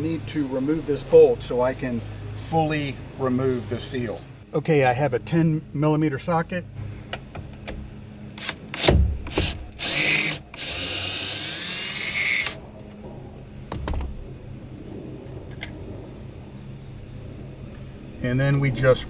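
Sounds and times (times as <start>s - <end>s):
power drill motor running: 8.3s - 12.6s.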